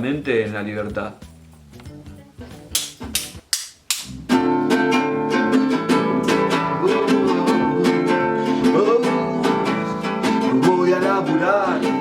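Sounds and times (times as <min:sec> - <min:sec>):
drum beat with cymbals: 0:00.0 - 0:03.5
guitar chords: 0:01.7 - 0:12.0.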